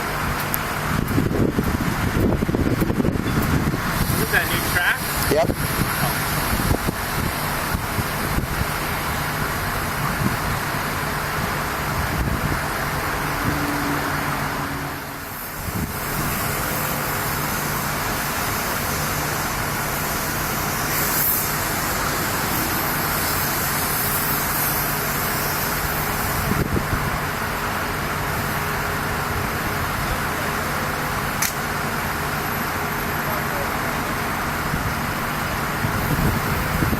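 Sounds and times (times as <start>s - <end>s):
engine drone: 0.0s - 36.9s
sharp click: 31.4s - 31.6s.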